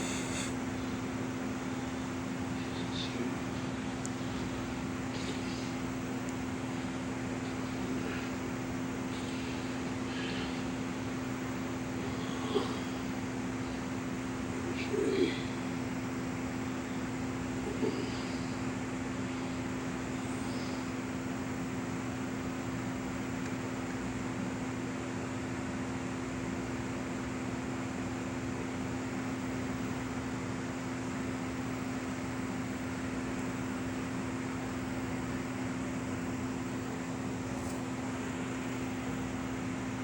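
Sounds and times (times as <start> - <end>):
static hiss: 0.0 - 1.0.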